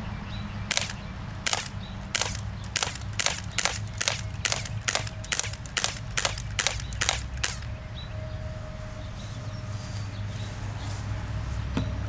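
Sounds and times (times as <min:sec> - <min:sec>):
steady low hum: 0:00.0 - 0:11.6
airsoft pistol shots: 0:00.7 - 0:07.7.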